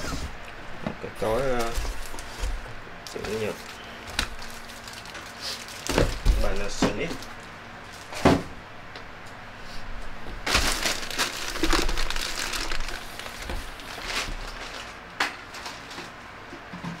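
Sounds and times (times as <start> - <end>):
rustling and crinkling: 1.2 - 8.2, 10.4 - 16.7.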